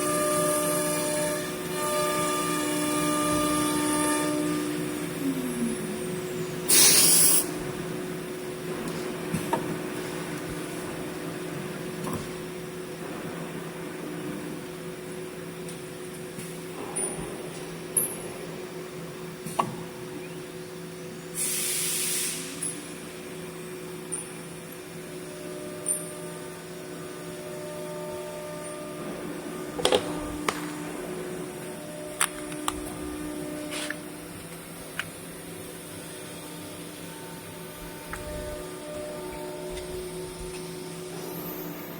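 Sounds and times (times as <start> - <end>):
machine humming: 0.0 - 14.0, 24.7 - 41.9.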